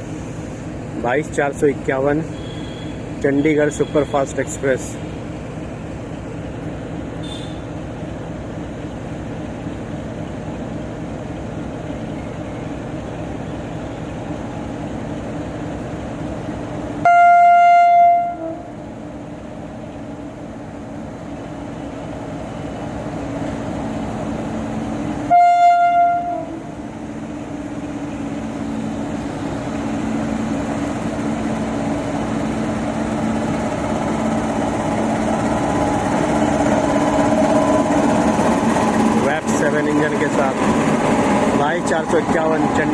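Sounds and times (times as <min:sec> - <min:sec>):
train rumble: 0:00.0 - 0:42.9
locomotive horn blasts: 0:02.3 - 0:04.3, 0:07.2 - 0:07.7, 0:17.0 - 0:18.8, 0:25.3 - 0:26.8.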